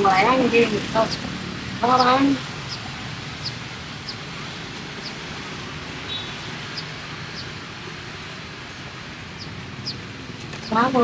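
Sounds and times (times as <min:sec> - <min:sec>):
street market background noise: 0:00.0 - 0:11.0
faint high chirps: 0:06.0 - 0:07.6.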